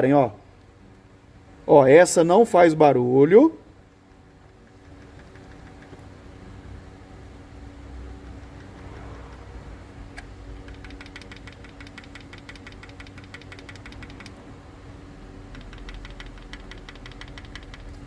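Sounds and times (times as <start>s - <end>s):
car engine idling: 7.6s - 14.5s
valve train ticking rapidly: 10.6s - 14.4s, 15.5s - 18.0s.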